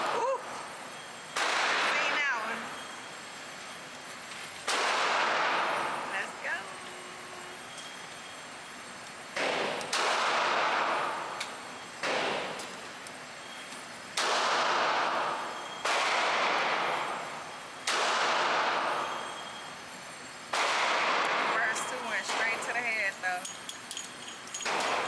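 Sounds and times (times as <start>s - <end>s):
handgun shots ringing: 24.0s - 25.0s.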